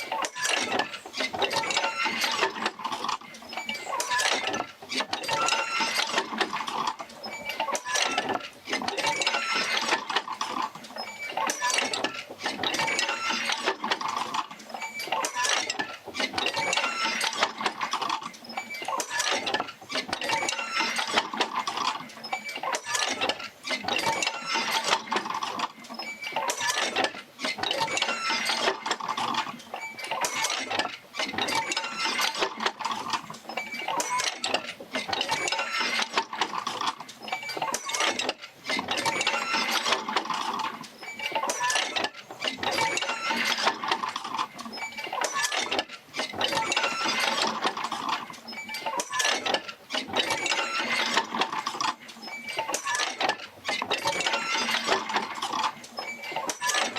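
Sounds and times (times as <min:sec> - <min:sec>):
metallic squeaks and clinks: 0:00.0 - 0:56.9.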